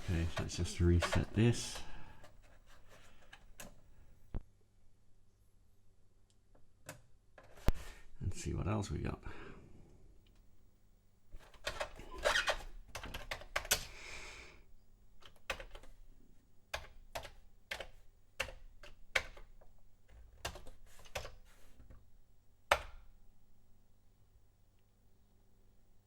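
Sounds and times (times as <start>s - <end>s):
clicky keyboard keystrokes: 12.6s - 13.9s, 15.2s - 16.0s, 16.8s - 19.6s, 20.3s - 21.5s.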